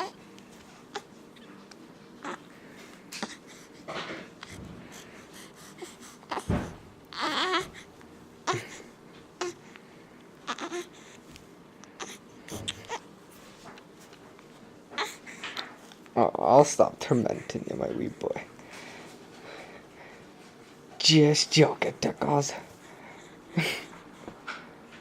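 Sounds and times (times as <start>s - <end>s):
baby whimpering cry: 0.0s - 0.2s, 2.2s - 2.5s, 5.4s - 9.6s, 10.4s - 11.2s, 12.0s - 13.1s, 14.9s - 15.8s.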